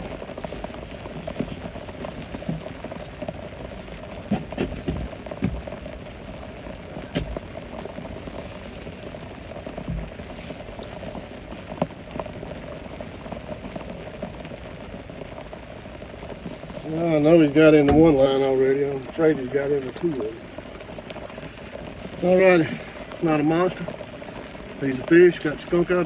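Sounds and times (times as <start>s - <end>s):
rain pattering on a canopy: 0.0s - 26.0s
knocks: 4.3s - 5.8s.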